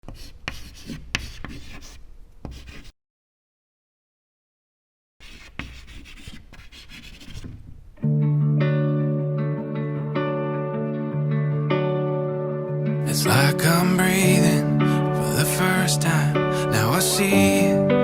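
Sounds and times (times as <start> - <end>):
scraping and rubbing: 5.2 - 7.7
guitar melody: 8.0 - 18.0.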